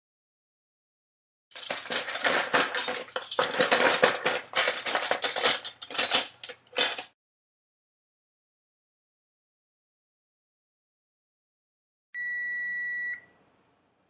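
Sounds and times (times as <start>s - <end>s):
metal silverware clattering: 1.5s - 7.2s.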